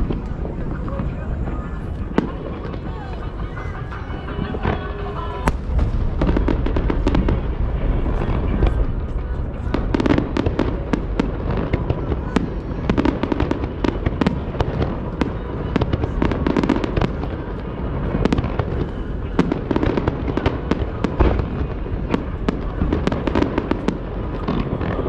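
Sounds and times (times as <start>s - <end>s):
low rumble: 0.0s - 11.5s
fireworks bursts and crackles: 0.0s - 25.0s.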